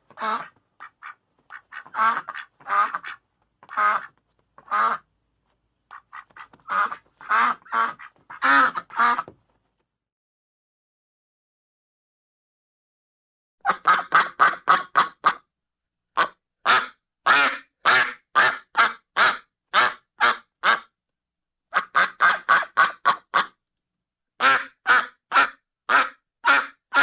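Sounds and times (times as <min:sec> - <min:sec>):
duck quacking harshly: 0:00.1 - 0:05.1, 0:05.9 - 0:09.3, 0:13.6 - 0:15.5, 0:16.2 - 0:21.0, 0:21.7 - 0:23.6, 0:24.4 - 0:27.0.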